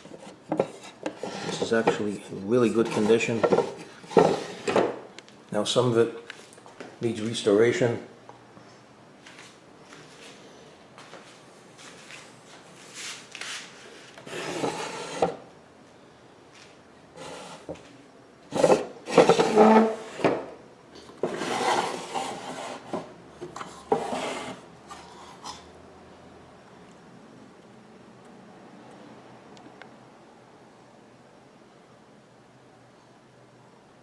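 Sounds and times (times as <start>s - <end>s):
wooden drawers scraping: 0.0s - 5.0s, 14.2s - 15.4s, 17.2s - 17.8s, 18.5s - 20.6s, 21.2s - 25.1s.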